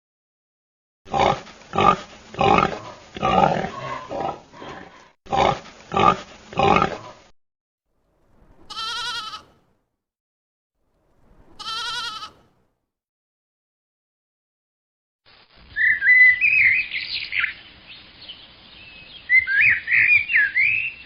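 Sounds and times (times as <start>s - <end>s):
farm animal grunting: 1.1s - 7.3s
sheep bleating: 8.7s - 9.6s, 11.6s - 12.5s.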